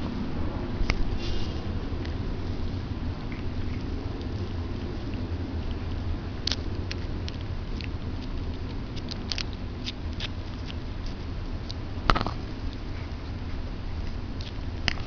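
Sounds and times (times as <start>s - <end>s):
steady low hum: 0.0s - 15.0s
dog gnawing crunching clicks: 3.3s - 12.9s, 14.0s - 15.0s.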